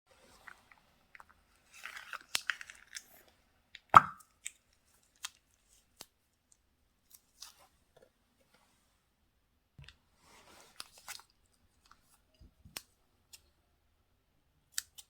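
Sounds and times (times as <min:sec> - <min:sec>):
loud slime pop: 0:04.0 - 0:04.2.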